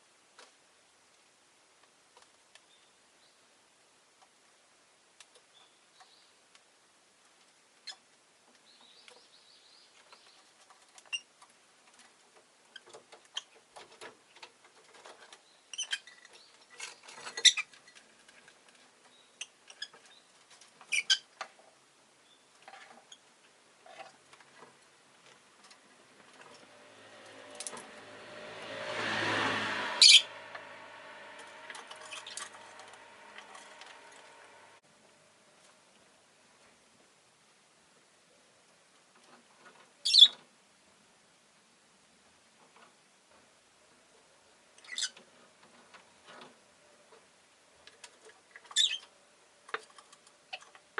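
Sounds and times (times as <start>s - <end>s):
passing vehicle: 25.9s - 34.8s.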